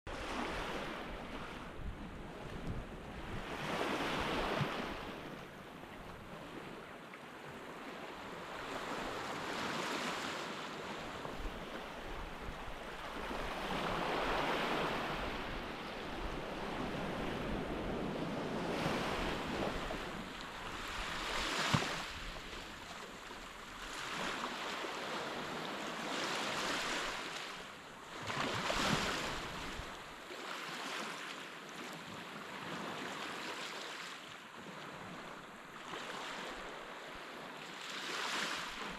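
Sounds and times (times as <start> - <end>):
waves washing on sand: 8.4 - 34.2.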